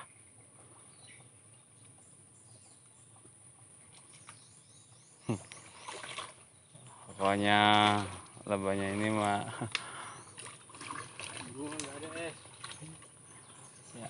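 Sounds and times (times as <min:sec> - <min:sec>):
faint bird chirps: 0:00.0 - 0:07.6, 0:09.5 - 0:10.6, 0:12.0 - 0:14.0.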